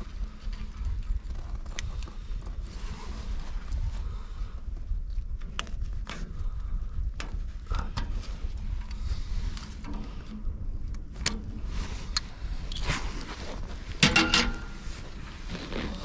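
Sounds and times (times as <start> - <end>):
steady low rumble: 0.0 - 16.0
metal clatter: 13.9 - 15.2.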